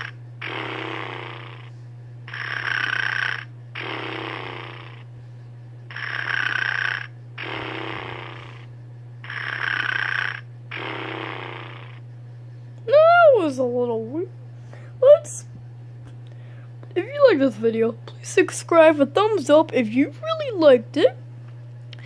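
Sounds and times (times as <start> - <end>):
toy dog snoring: 0.0 - 1.7, 2.3 - 5.1, 5.9 - 12.0
steady low hum: 0.0 - 22.0.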